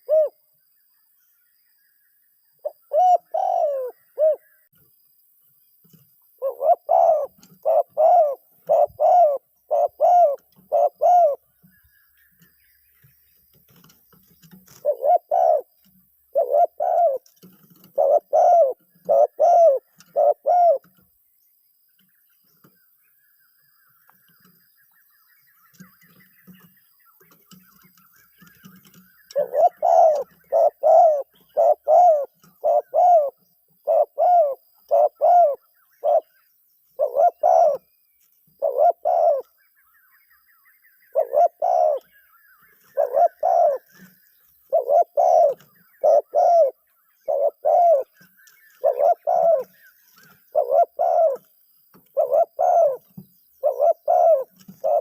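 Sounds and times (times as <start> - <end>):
dove cooing: 0.0 - 0.5, 2.6 - 4.6, 6.4 - 11.5, 13.8 - 21.1, 28.4 - 36.4, 37.0 - 37.9, 38.6 - 39.6, 41.1 - 42.2, 42.8 - 51.5, 52.1 - 55.0
faint high chirping: 0.0 - 55.0.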